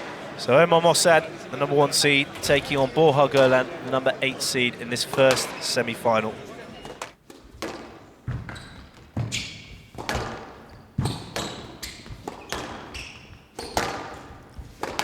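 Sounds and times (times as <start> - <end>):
shoe squeaks on court: 6.5 - 15.0
squash ball hitting rackets and walls: 6.7 - 15.0.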